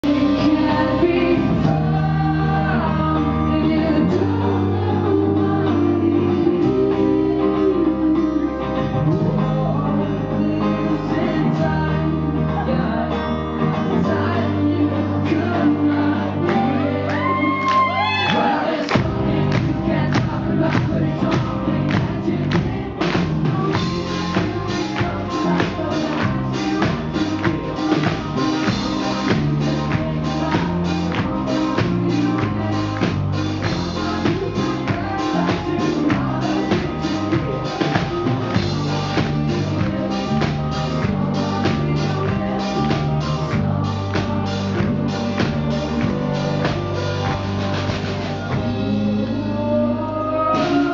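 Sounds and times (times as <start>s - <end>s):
man singing lead vocal: 0.0s - 47.4s, 48.2s - 50.9s
bass notes: 0.0s - 50.9s
guitar: 0.0s - 50.9s
drum kit beat: 17.1s - 50.9s.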